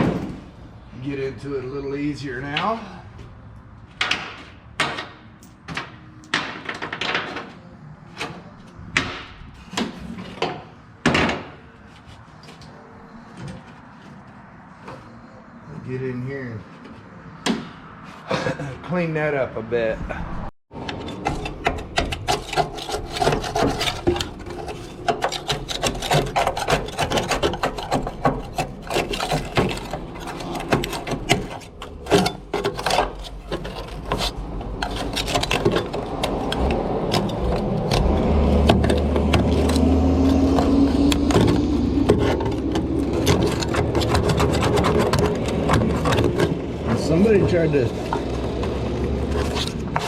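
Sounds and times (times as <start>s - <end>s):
scraping rusty sheet metal: 20.7s - 50.0s.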